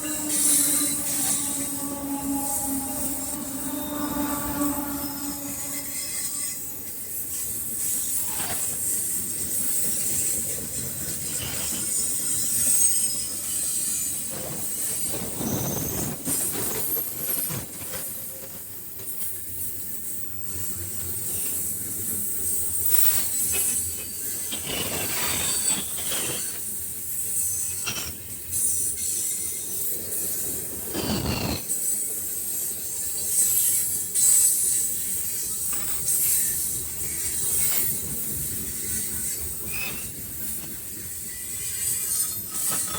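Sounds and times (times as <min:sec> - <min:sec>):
train cars clanking: 0:00.0 - 0:42.9
train wheels squealing: 0:00.0 - 0:42.9.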